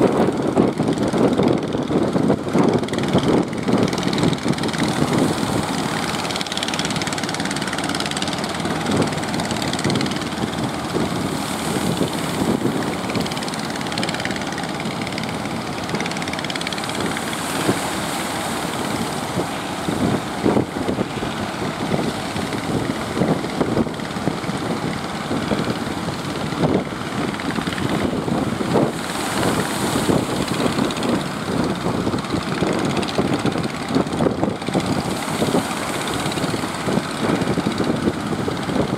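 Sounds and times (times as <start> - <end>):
boat engine running: 0.0 - 38.9
surges of noise: 3.5 - 33.9.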